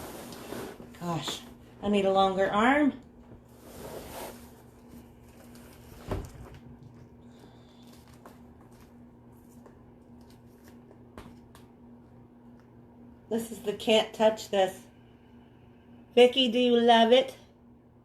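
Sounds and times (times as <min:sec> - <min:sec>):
steady low hum: 0:00.0 - 0:18.0
handling of packaging: 0:03.6 - 0:11.5.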